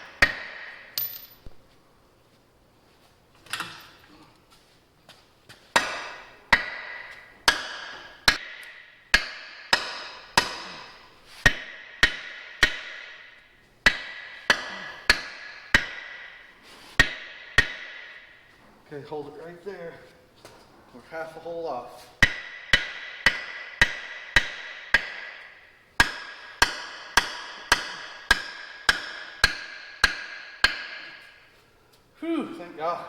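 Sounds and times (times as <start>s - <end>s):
hammer striking steel: 0.0s - 1.4s, 5.7s - 18.5s, 22.2s - 31.5s.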